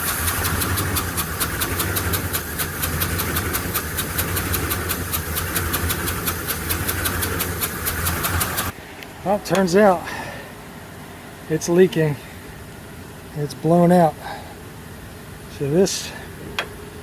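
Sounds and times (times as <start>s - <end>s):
rapid sharp ticking: 0.0s - 8.7s
engine idling: 0.0s - 10.8s.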